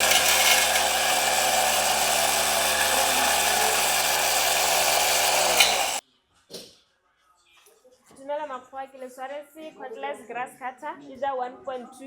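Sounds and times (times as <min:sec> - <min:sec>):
cordless grass cutter whirring: 0:00.0 - 0:06.0.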